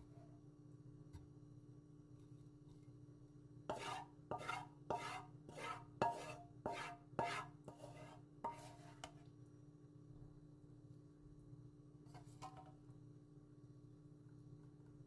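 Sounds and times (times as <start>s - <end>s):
utensil scraping cookware: 3.7s - 9.1s.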